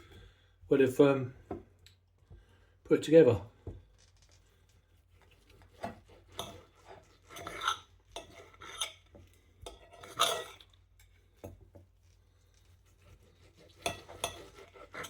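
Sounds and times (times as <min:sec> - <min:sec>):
knife and fork scraping: 0:05.1 - 0:11.6, 0:12.5 - 0:15.0.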